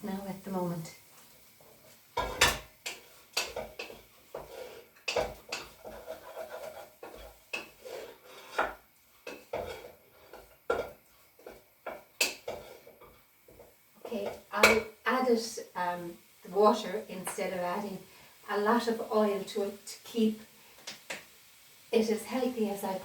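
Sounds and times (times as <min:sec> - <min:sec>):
utensil scraping a cooking pot: 0:02.2 - 0:14.9.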